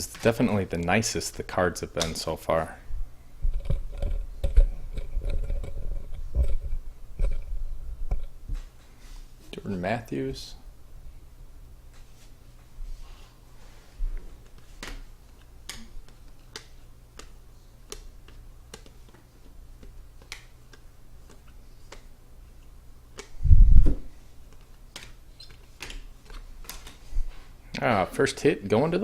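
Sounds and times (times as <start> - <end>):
cards flipping with clicks: 14.4 - 23.4, 24.5 - 27.0
low thump: 23.6 - 24.1.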